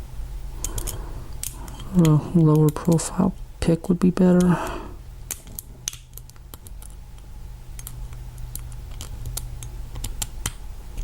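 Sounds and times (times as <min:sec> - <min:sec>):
lock pick clicking and scratching: 0:05.3 - 0:07.0, 0:07.8 - 0:11.0.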